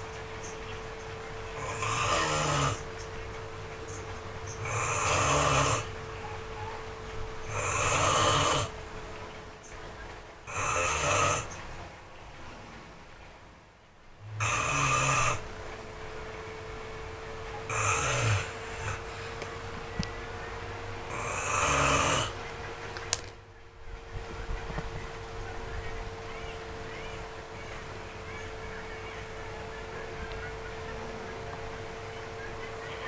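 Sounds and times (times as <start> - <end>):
person snoring: 1.6 - 2.9, 4.6 - 6.0, 7.5 - 8.8, 10.5 - 11.6, 14.2 - 15.5, 17.7 - 19.3, 21.1 - 22.4.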